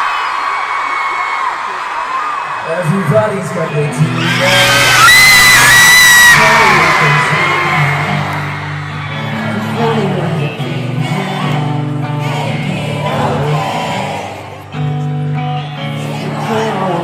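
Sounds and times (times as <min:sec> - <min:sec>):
crowd cheering: 0:00.0 - 0:17.0
live pop-rock band: 0:03.4 - 0:17.0
lead vocal singing: 0:06.3 - 0:14.9, 0:15.7 - 0:17.0.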